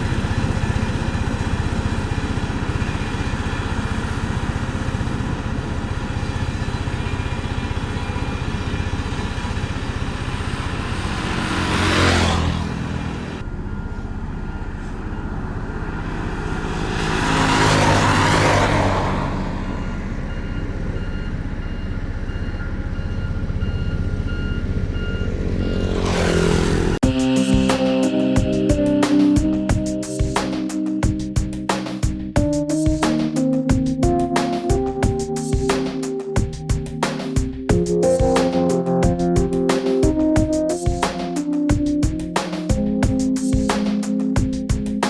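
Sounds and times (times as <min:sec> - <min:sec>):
road-paving machinery running: 0:00.0 - 0:27.4
vehicles passing: 0:00.0 - 0:45.0
reversing alarm beeping: 0:13.4 - 0:16.7, 0:19.6 - 0:26.9.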